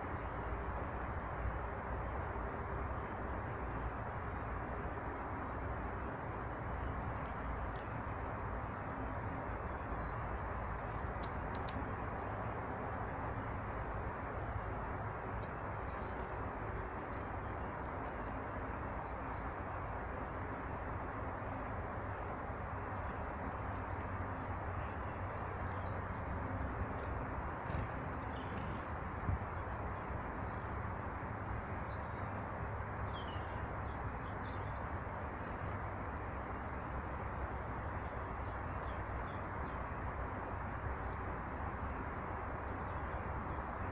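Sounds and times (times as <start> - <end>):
small birds chirping: 9.3 - 11.9, 14.8 - 17.5, 27.6 - 30.7, 31.7 - 35.7.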